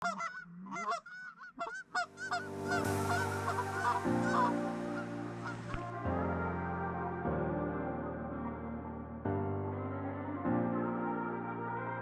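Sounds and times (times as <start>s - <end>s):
geese honking: 0.0s - 5.8s
ambient music with held chords: 2.1s - 12.0s.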